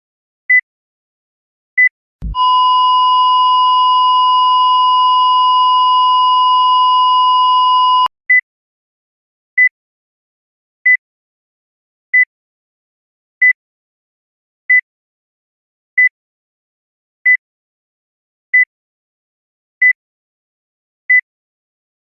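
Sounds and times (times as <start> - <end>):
flatline tone: 2.2 - 8.1
heart monitor beeps: 2.2 - 8.4.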